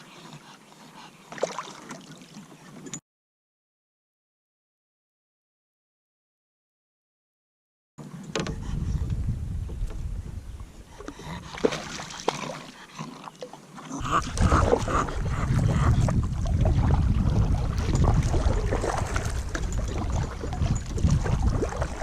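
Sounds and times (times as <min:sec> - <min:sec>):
dog lapping water: 0:11.0 - 0:22.0.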